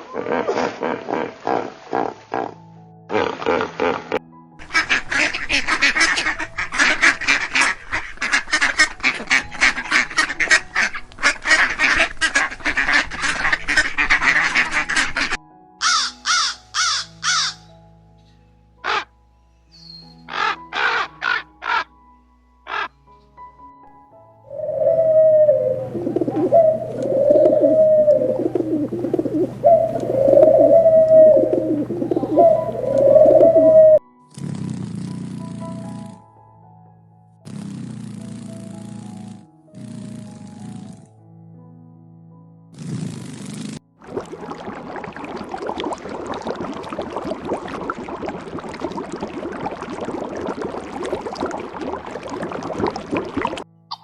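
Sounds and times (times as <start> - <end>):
ducks quacking: 4.6 - 17.6, 18.8 - 19.1, 20.3 - 21.9
bird cooing: 24.5 - 34.0.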